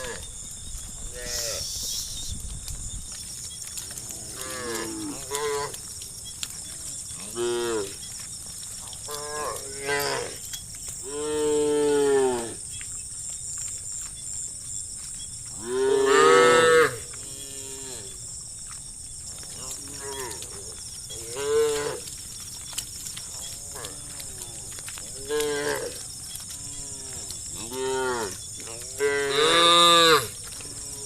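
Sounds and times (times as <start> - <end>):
cows mooing: 3.8 - 5.8, 6.6 - 8.0, 9.0 - 10.4, 11.0 - 12.6, 15.6 - 18.2, 19.6 - 22.2, 23.2 - 31.0.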